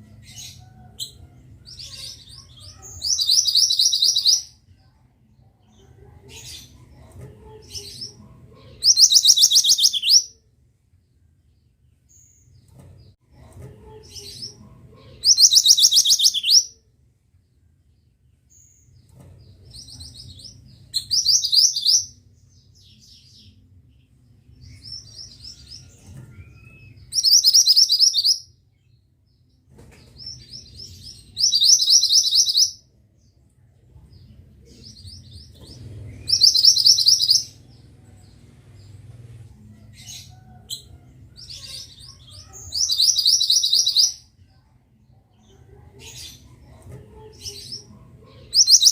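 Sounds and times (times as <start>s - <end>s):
soft bird chirps: 0.2s - 4.6s, 7.7s - 10.4s, 15.2s - 16.8s, 24.6s - 29.0s, 29.8s - 33.4s, 34.2s - 39.3s, 40.0s - 44.2s
bird singing rolling notes: 35.0s - 39.3s.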